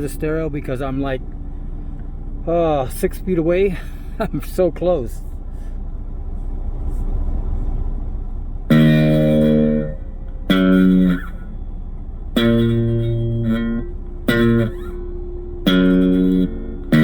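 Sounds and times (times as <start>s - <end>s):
steady low hum: 0.0s - 17.0s
electric guitar notes ringing: 8.7s - 17.0s.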